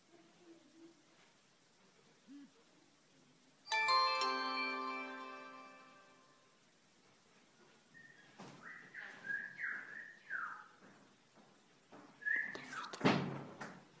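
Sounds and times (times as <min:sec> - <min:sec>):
bird chirping: 0:07.9 - 0:10.8.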